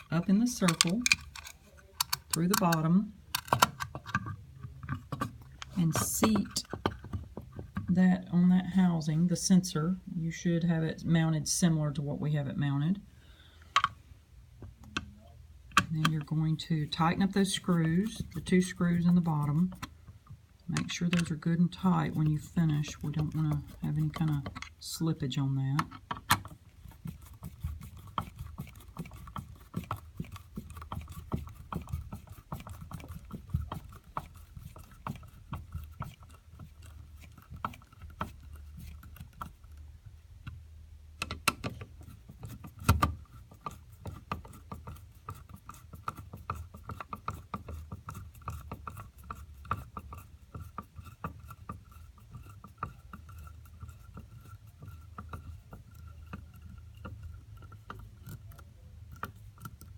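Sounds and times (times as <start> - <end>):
screwdriver clicking and rattling: 0.0 - 5.7.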